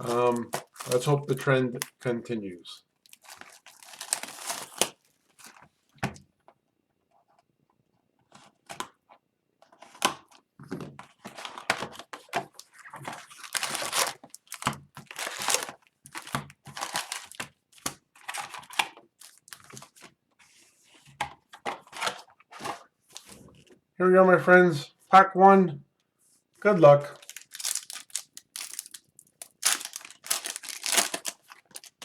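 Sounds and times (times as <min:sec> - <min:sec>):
plastic shrink-wrap tearing and crinkling: 0:00.0 - 0:02.0, 0:03.0 - 0:05.7, 0:12.6 - 0:20.0, 0:27.2 - 0:32.0.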